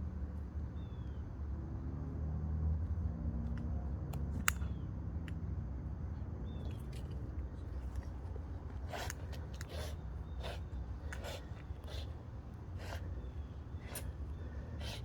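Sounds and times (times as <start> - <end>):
puppy breathing hard: 8.7 - 15.0.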